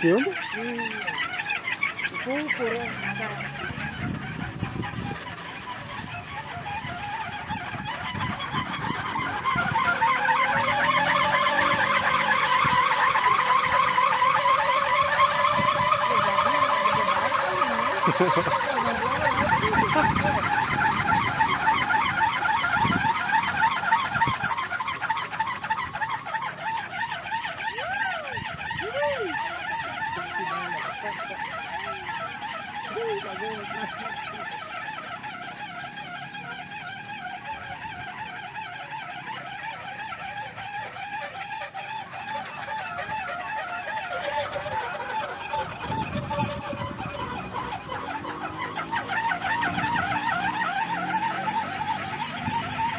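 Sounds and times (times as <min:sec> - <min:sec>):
wind propeller warbling hum: 0:00.0 - 0:52.9
wind rumble: 0:03.4 - 0:26.2, 0:45.6 - 0:50.8.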